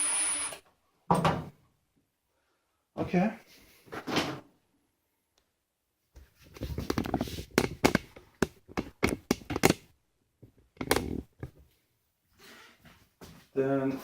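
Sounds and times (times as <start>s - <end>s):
parts clicking and knocking: 6.8s - 11.6s.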